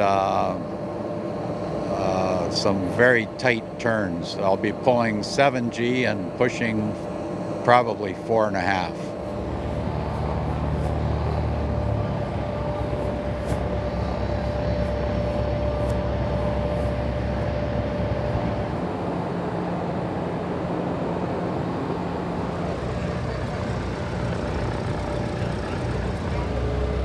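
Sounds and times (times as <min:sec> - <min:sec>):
aircraft engine drone: 0:00.0 - 0:27.0.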